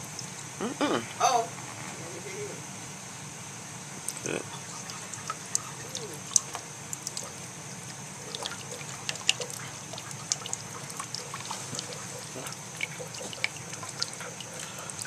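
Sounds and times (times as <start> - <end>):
water dripping and splashing: 0.0 - 0.5, 4.0 - 15.0
water rushing from a hose: 4.6 - 15.0.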